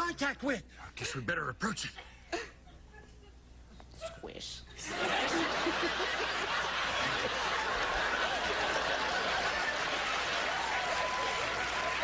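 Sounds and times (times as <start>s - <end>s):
audience laughing: 4.8s - 10.7s.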